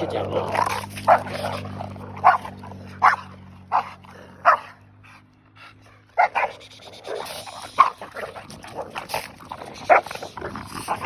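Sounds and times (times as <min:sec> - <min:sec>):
dog barking excitedly: 0:01.0 - 0:04.8, 0:06.1 - 0:08.2.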